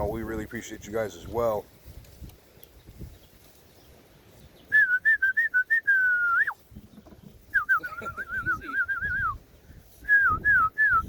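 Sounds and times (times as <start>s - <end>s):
person whistling a tune: 4.7s - 6.6s, 7.6s - 9.4s, 10.0s - 11.0s.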